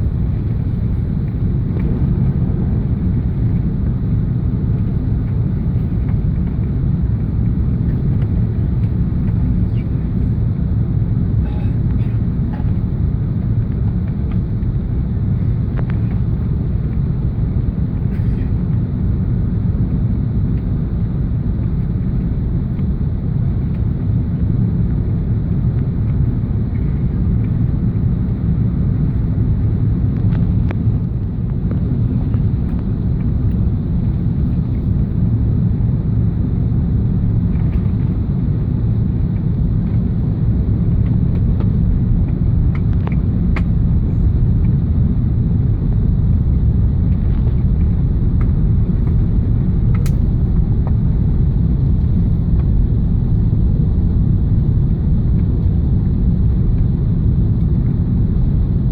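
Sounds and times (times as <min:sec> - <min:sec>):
airplane cabin rumble: 0:00.0 - 0:58.9.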